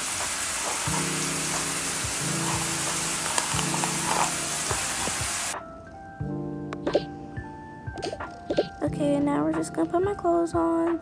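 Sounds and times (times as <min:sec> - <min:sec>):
steady hiss: 0:00.0 - 0:05.6.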